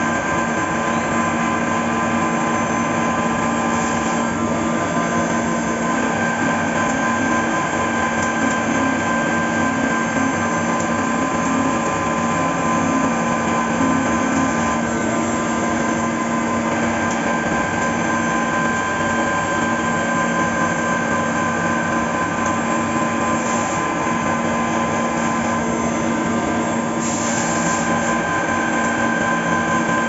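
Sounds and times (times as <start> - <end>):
milling machine cutting: 1.2 - 30.0.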